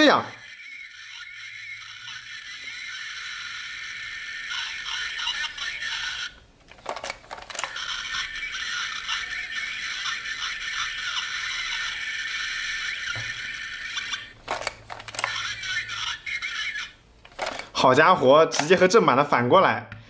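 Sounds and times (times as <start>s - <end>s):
toy belt sound effects and music: 0.0s - 17.7s
sharp clicks: 5.8s - 8.3s, 13.1s - 15.6s.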